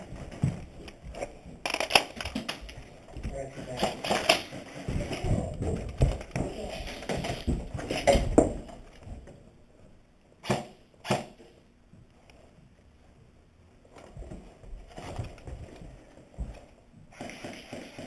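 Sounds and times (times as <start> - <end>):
sharp cracks: 1.6 - 2.7, 10.4 - 11.5.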